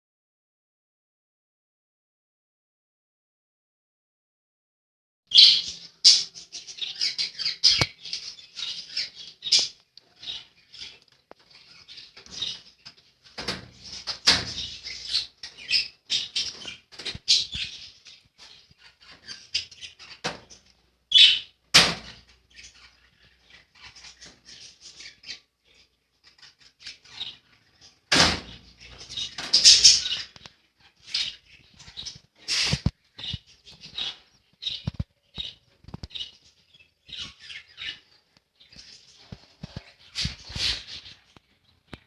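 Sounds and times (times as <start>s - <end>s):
budgerigars chirping: 5.3s - 13.0s, 13.7s - 41.4s
wings flapping and rustling: 38.8s - 41.2s.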